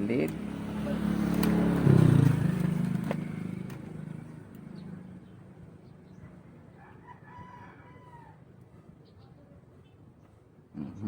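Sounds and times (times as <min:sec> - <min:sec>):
passing vehicle engine: 0:00.0 - 0:06.2.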